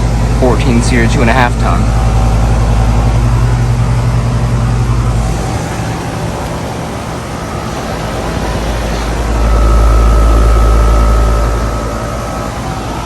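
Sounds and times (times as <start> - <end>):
compressor hum: 0.0 - 13.0
fans rushing: 0.0 - 13.0.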